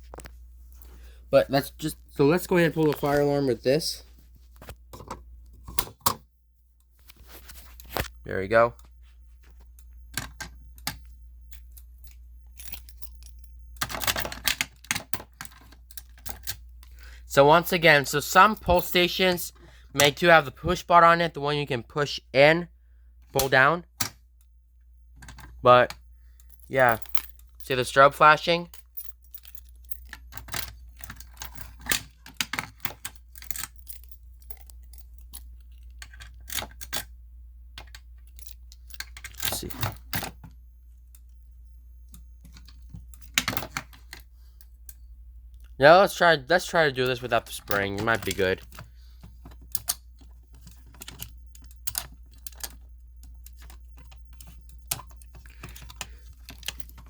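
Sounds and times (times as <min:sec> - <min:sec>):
steady low hum: 0:00.0 - 0:57.0
clicks and metallic rattling: 0:47.0 - 0:57.0.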